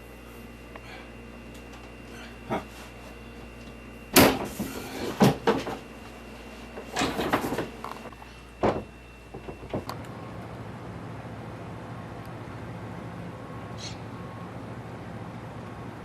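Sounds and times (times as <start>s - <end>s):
steady low hum: 0.0s - 16.0s
sharp knocks and clatters: 8.6s - 9.9s.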